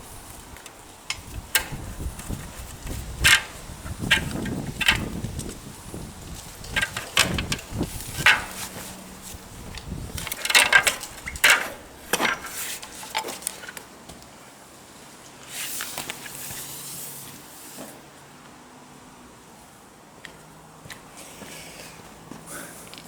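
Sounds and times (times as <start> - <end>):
hand tools and metal parts clinking: 0.5 - 5.6, 6.4 - 13.9.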